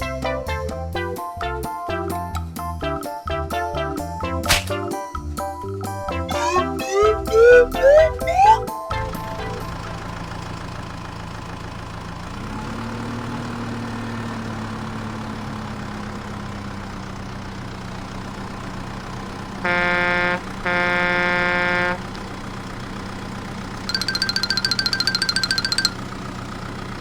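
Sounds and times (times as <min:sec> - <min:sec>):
cartoon truck engine hum: 0:00.0 - 0:27.0
truck horn honking: 0:19.6 - 0:22.3.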